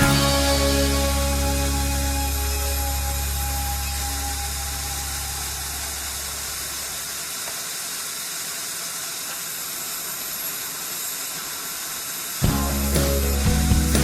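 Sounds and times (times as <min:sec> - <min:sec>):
low hum: 0:00.0 - 0:07.3
steady hissing noise: 0:00.0 - 0:14.0.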